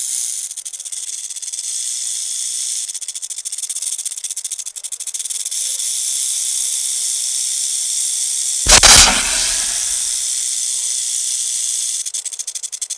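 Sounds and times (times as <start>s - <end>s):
snake hissing: 8.7s - 10.2s
rattlesnake rattle buzzing: 8.7s - 10.3s.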